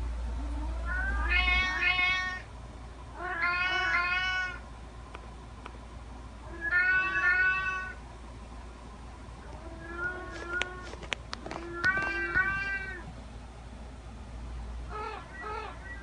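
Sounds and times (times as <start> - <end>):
cat meowing: 0.6 - 2.5, 3.2 - 4.6, 6.5 - 8.0, 9.5 - 10.9, 11.5 - 13.1.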